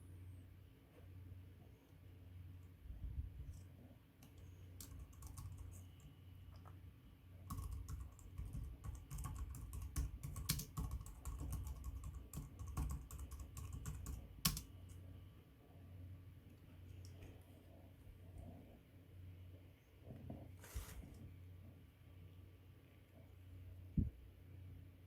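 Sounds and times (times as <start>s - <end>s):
typing on metal keyboard: 4.8s - 5.8s, 7.5s - 14.7s.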